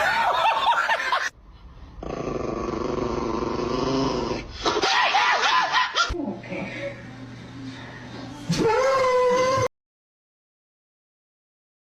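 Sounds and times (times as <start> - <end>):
dog growling: 2.0 - 4.5
dog whining: 8.5 - 9.7.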